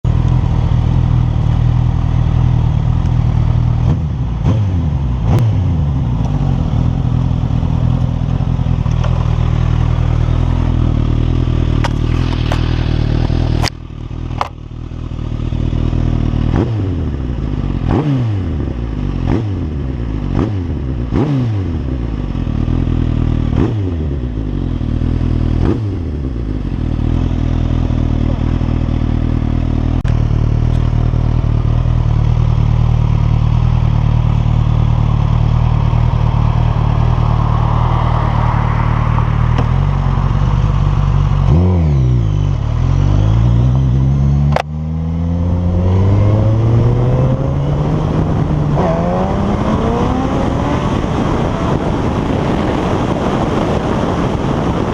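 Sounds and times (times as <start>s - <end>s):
motorcycle engine revving: 0.0s - 54.9s
sharp click: 44.5s - 44.7s.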